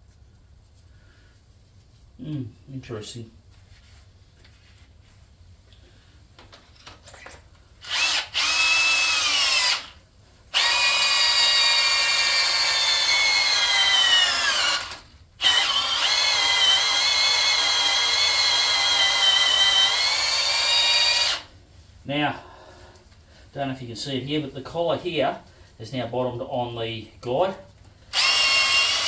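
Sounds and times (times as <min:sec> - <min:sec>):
electric drill drilling into metal: 0:07.8 - 0:10.0, 0:10.6 - 0:21.5, 0:28.1 - 0:29.0.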